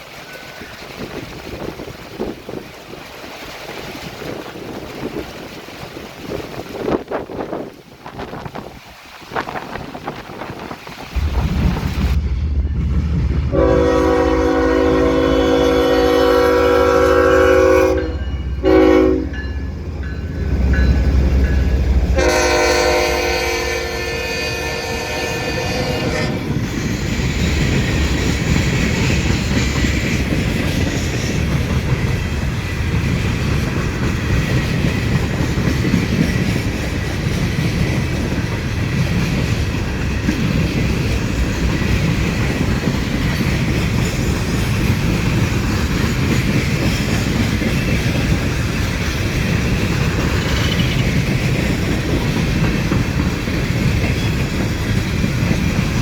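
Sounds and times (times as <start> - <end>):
train rumbling past: 0.0 - 56.0
train horn chord: 11.2 - 19.6, 21.8 - 26.4.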